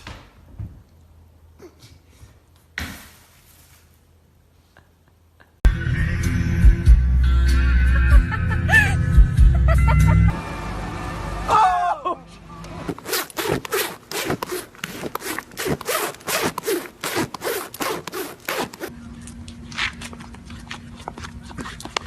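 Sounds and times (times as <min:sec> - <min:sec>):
rasping scraping strokes: 0:12.9 - 0:18.9.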